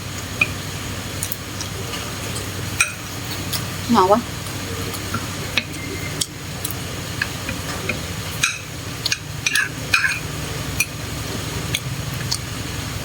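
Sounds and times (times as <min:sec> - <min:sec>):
steady low hum: 0:00.0 - 0:13.0
utensils clinking on dishes: 0:01.2 - 0:03.7, 0:05.5 - 0:12.5.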